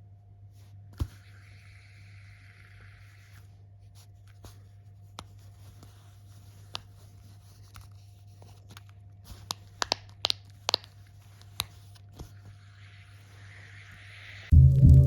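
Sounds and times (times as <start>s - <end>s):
steady low hum: 14.5s - 15.0s.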